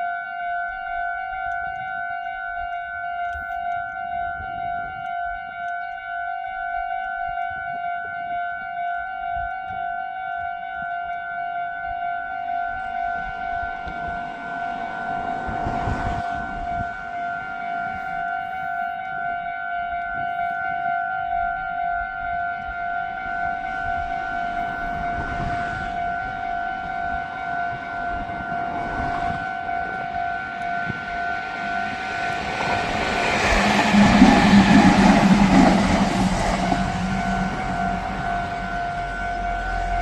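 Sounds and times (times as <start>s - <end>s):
level-crossing bell ringing: 11.6s - 40.0s
electric train passing: 12.2s - 20.8s, 21.4s - 40.0s.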